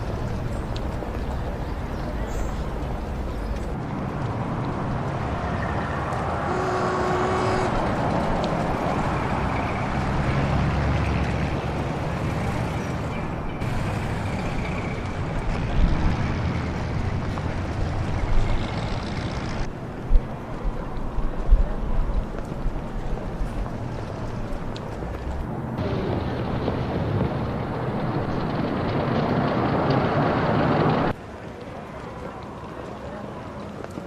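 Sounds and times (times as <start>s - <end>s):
motor vehicle traffic noise: 0.0s - 34.0s
short steady tone: 6.5s - 7.8s.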